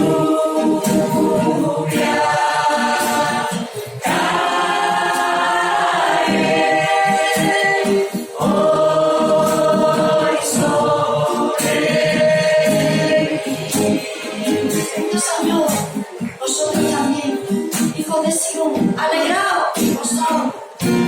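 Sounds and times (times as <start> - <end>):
choir singing long held notes: 0.0 - 15.0.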